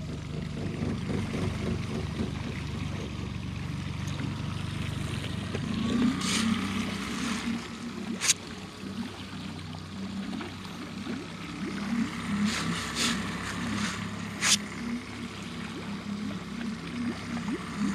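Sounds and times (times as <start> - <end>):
boat motor running: 0.0 - 17.9
short hiss: 12.5 - 14.6.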